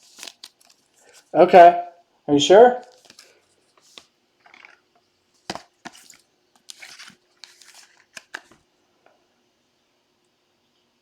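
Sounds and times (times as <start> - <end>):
plastic and paper crinkling: 0.0 - 1.4, 2.8 - 8.6
packaging clicks: 2.9 - 4.8, 5.5 - 8.6.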